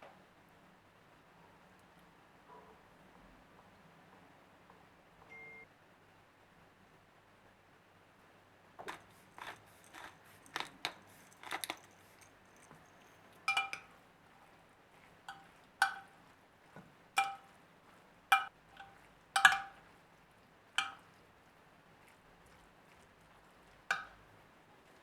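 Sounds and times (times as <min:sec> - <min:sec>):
dishes clinking: 0:08.8 - 0:13.9, 0:15.3 - 0:16.1.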